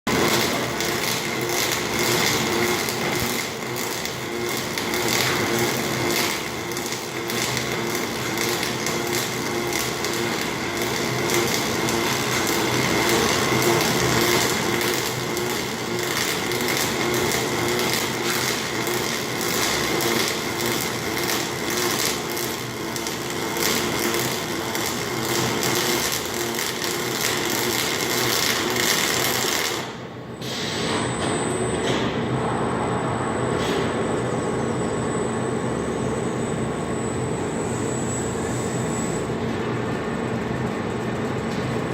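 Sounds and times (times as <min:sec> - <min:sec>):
welding arc crackling and sizzling: 0:00.1 - 0:30.0.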